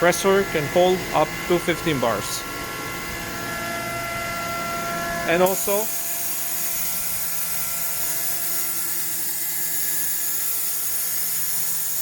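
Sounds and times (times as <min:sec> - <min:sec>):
compressor humming: 0:00.0 - 0:12.0
compressed air hissing: 0:05.4 - 0:12.0.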